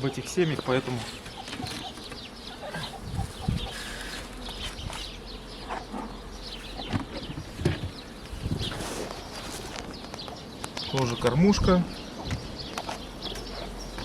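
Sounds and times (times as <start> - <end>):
birds calling faintly: 0.0 - 14.0
dull knocks of hive parts: 0.9 - 11.2, 12.2 - 14.0
wind rumbling on microphone: 2.8 - 3.9, 6.8 - 9.9.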